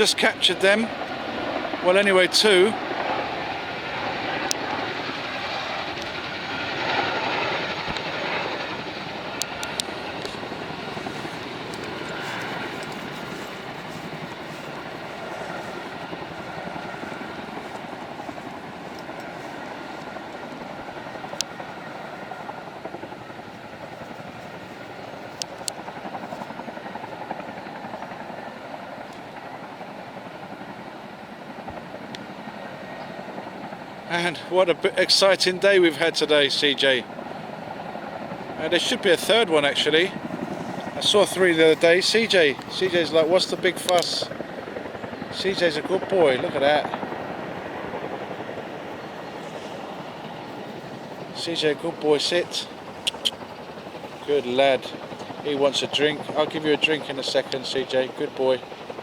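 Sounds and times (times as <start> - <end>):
distant helicopters droning: 0.0 - 59.0
faint clicks: 9.4 - 10.4, 11.6 - 15.0, 17.1 - 19.4, 52.9 - 54.1.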